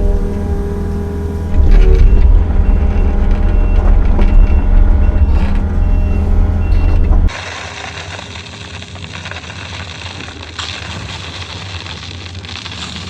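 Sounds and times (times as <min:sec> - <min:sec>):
machine clunks: 0:00.0 - 0:07.3
excavator diesel engine under load: 0:00.0 - 0:07.4
short high beep: 0:01.6 - 0:07.0.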